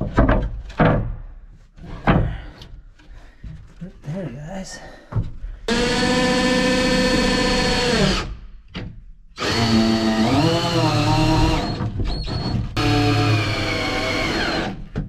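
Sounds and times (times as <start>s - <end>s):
power drill driving screws: 5.7s - 8.4s, 9.4s - 14.9s.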